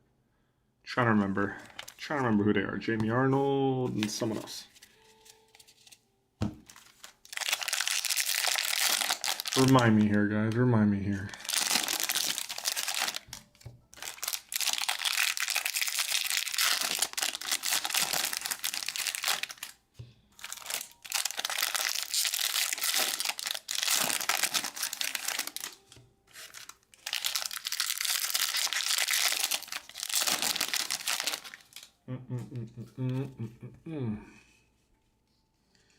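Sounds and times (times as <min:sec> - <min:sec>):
foil wrappers crinkling and tearing: 0:01.6 - 0:02.1, 0:06.6 - 0:19.8, 0:20.4 - 0:32.0.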